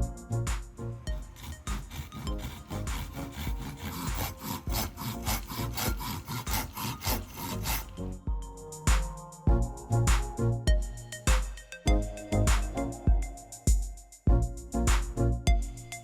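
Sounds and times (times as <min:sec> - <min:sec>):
background music: 0:00.0 - 0:16.0
saw cutting wood: 0:01.1 - 0:08.0.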